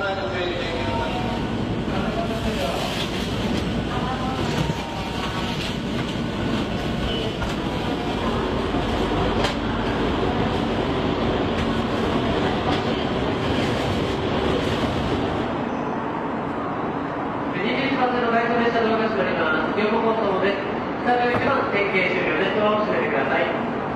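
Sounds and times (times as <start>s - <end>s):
train wheels rumbling on rails: 0.0s - 15.6s.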